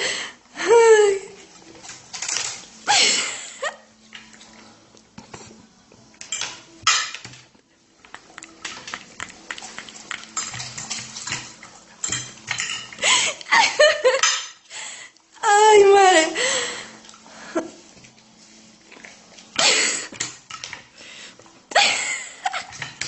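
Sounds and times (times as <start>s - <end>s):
hard objects clinking together: 10.3s - 13.0s.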